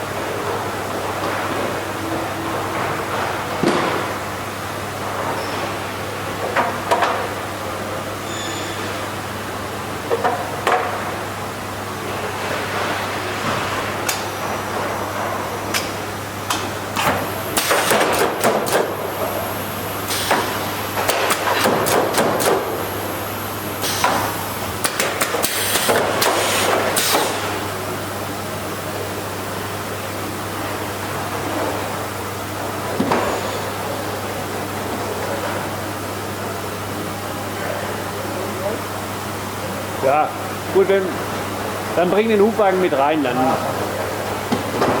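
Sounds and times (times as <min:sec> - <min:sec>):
machine hum: 0:13.2 - 0:33.0.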